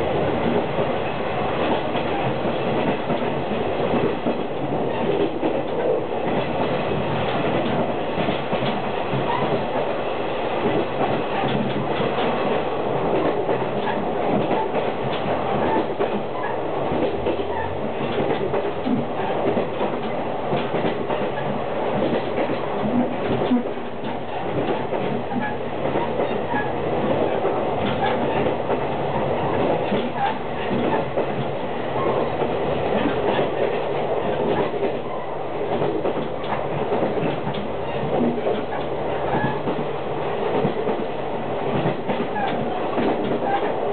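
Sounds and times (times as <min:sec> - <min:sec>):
train rumbling on rails: 0:00.0 - 0:43.9
wheels clicking over rail joints: 0:22.0 - 0:28.6.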